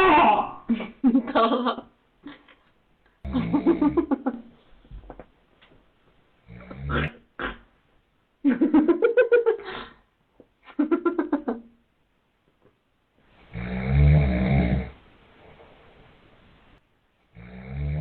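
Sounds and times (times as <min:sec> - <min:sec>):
man snoring: 0:13.5 - 0:15.0, 0:17.4 - 0:18.0.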